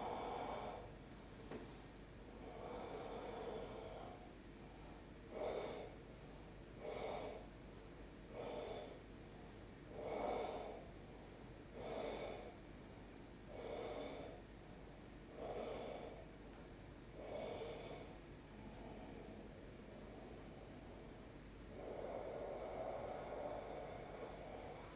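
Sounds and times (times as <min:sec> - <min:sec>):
person breathing with throaty hiss: 0:00.0 - 0:24.9.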